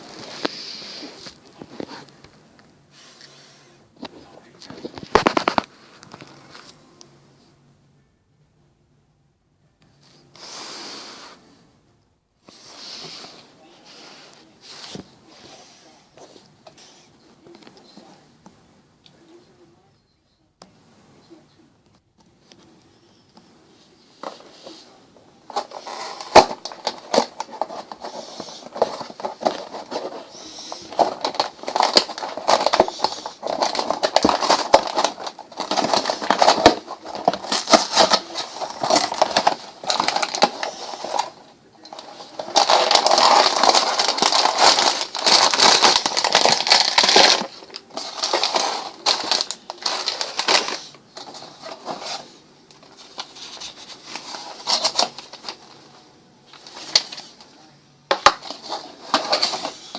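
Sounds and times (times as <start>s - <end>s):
packaging crinkling: 25.5s - 55.9s, 56.5s - 57.5s, 58.1s - 59.9s.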